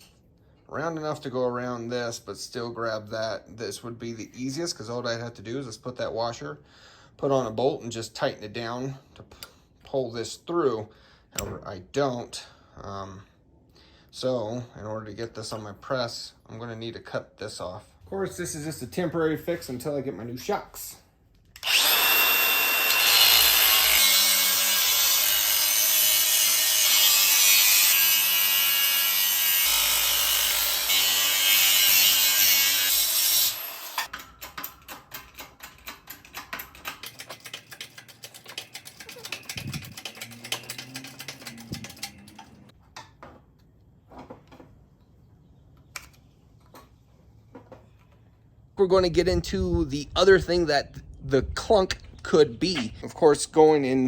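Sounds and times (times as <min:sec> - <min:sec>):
power tool cutting: 0:21.6 - 0:34.1
irregular clicks and rattles: 0:34.0 - 0:42.8.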